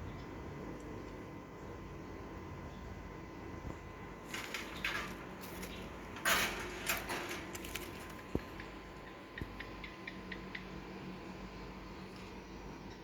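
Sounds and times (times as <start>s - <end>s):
electrical hum: 0.0s - 13.0s
rustling: 4.2s - 8.5s.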